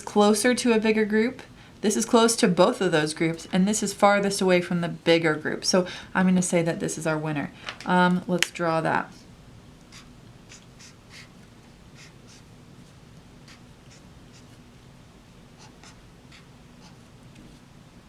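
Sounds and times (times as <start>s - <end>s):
pen scratching while writing: 13.4s - 14.6s, 15.6s - 17.6s.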